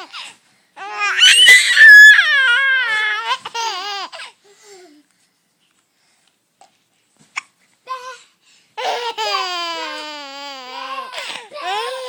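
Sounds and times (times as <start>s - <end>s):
child laughing in squeals: 1.2s - 2.3s.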